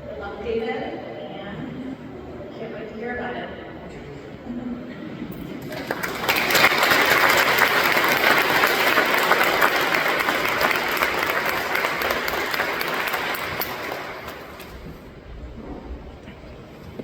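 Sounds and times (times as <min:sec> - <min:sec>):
group of people applauding: 0:05.5 - 0:15.1.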